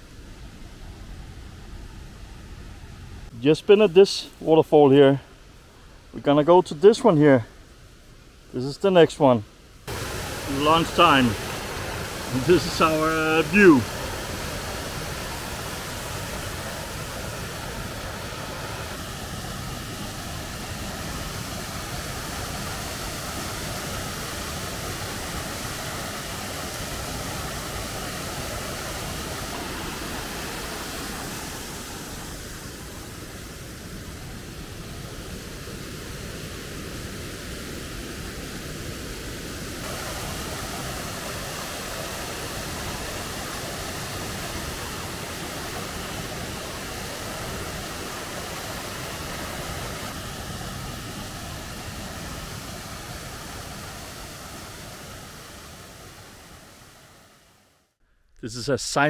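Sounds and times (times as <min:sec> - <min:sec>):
waterfall rushing: 0:09.9 - 0:38.4, 0:39.8 - 0:57.4.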